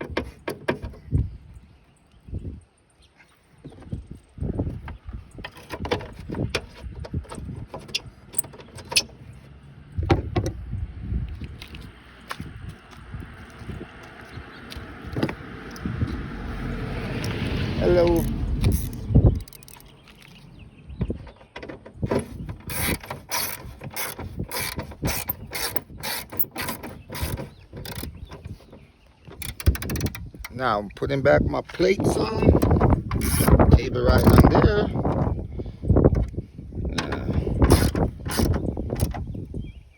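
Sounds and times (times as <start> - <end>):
metal parts clicking and knocking: 18.1 - 20.3, 21.1 - 30.6, 32.5 - 35.3, 36.9 - 39.2.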